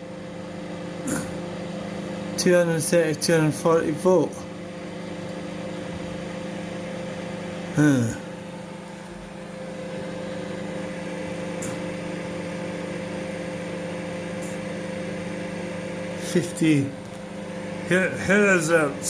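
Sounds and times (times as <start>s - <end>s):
microwave oven humming: 0.0s - 19.0s
short vocal sound: 1.0s - 1.4s, 7.8s - 8.2s.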